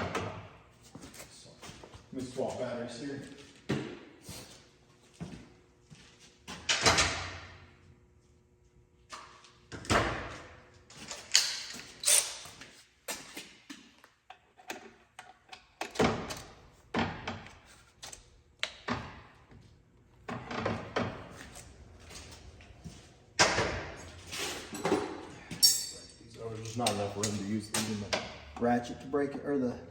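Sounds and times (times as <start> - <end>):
wrench clanking against metal: 24.7 - 28.0.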